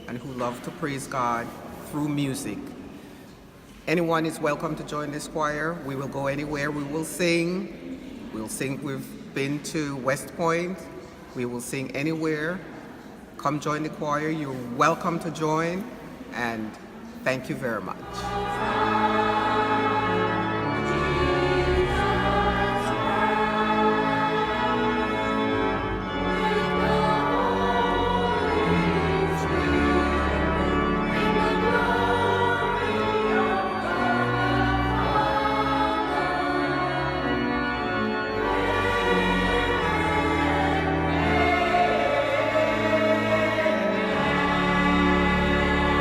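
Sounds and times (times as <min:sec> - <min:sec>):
choir singing sustained chords: 0:15.1 - 0:46.0.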